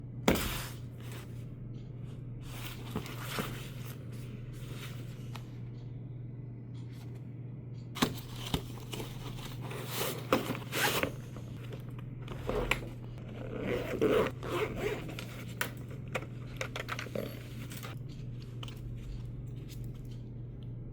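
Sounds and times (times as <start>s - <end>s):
low electrical hum: 0.0s - 20.9s
packaging scraping and rustling: 8.1s - 11.5s.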